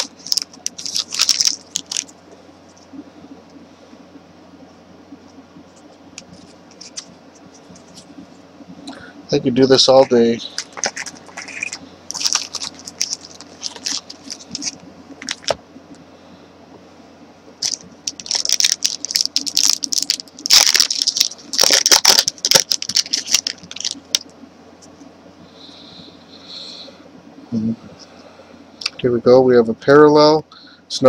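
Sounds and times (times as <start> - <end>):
trading cards rustling: 0.0 - 2.1, 6.2 - 8.2, 9.8 - 15.6, 17.6 - 24.2.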